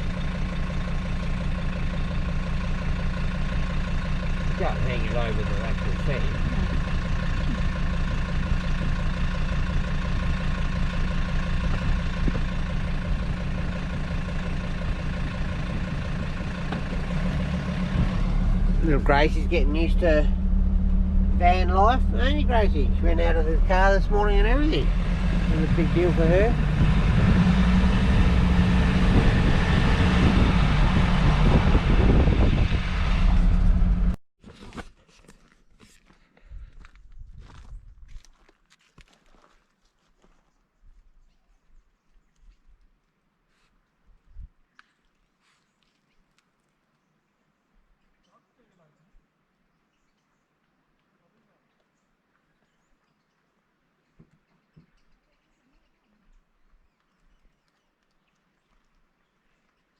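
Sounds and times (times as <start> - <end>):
engine running from inside cab: 0.0 - 34.2.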